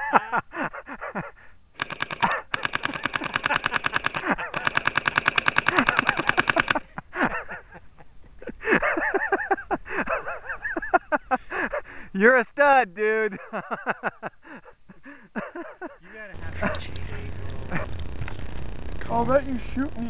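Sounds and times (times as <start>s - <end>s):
airsoft gun firing rapidly: 1.8s - 6.8s.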